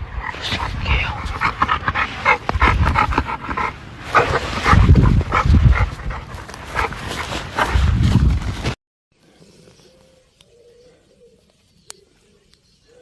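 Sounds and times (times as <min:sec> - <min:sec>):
dog panting: 0:00.2 - 0:07.8.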